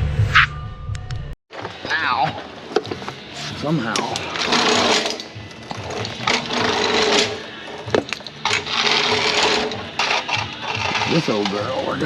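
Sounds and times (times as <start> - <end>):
power tool rattling and whining: 3.8 - 12.0.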